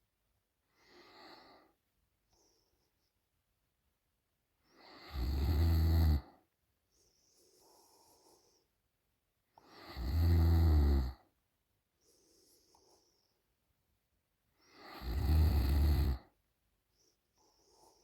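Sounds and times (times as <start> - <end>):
soft breath: 0.6 - 3.2, 6.8 - 8.9, 11.9 - 13.6, 16.8 - 18.0
woman snoring: 4.8 - 6.3, 9.6 - 11.2, 14.7 - 16.3.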